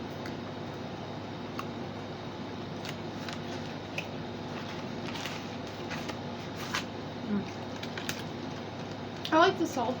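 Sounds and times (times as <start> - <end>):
snack sticks crunching: 2.8 - 9.4.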